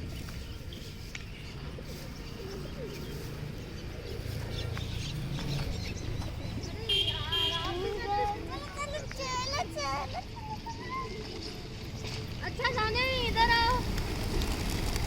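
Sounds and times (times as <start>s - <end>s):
pigeons cooing: 1.6s - 6.0s.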